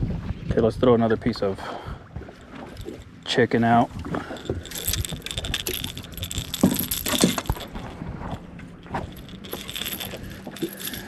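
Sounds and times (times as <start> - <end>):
metallic clicks and rattles: 4.0 - 8.0, 8.9 - 11.0.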